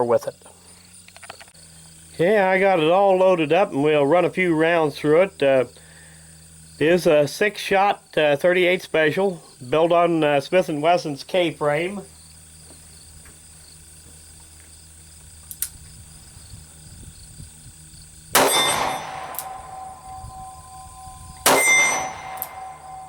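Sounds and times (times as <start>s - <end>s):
metallic ring: 18.4s - 23.0s
revolver shots: 18.4s - 23.0s.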